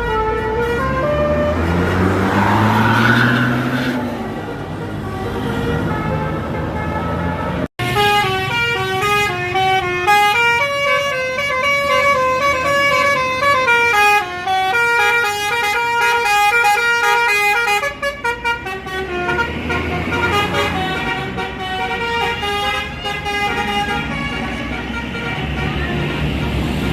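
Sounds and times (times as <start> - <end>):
bus air horn melody: 0.0 - 2.2, 3.6 - 26.9
bus engine: 0.0 - 26.9
road traffic: 0.0 - 26.9.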